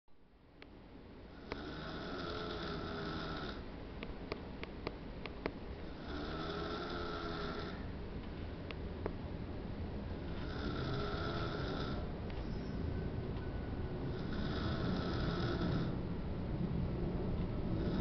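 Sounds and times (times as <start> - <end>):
long snores: 1.3 - 3.6, 5.9 - 7.9, 10.4 - 12.1, 14.1 - 16.0, 17.8 - 18.0.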